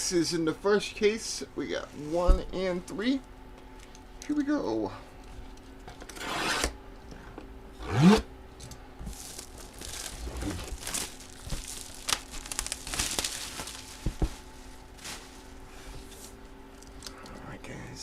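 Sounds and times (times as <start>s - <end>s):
cardboard box wrapping tearing: 9.1s - 14.4s.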